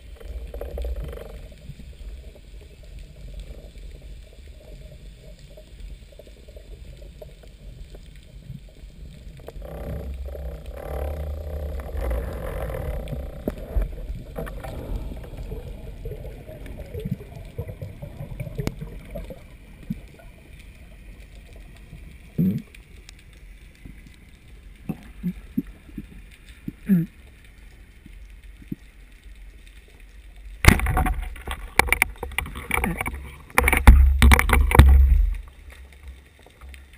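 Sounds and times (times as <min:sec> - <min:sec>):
muffled underwater rumble: 0:00.0 - 0:36.9
clicks and knocks: 0:30.6 - 0:35.5.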